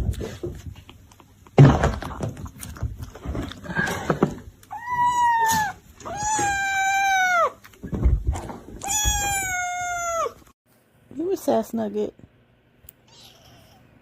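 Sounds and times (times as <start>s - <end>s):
cat meowing: 4.7s - 7.6s, 8.8s - 10.4s.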